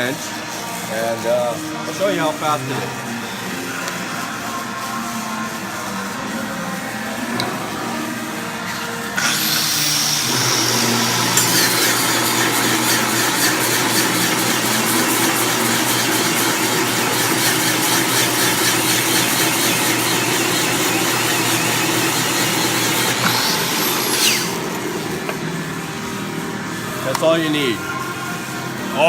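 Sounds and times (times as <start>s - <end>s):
machine motor humming: 1.6s - 28.1s
angle grinder on steel pipe: 8.7s - 25.4s.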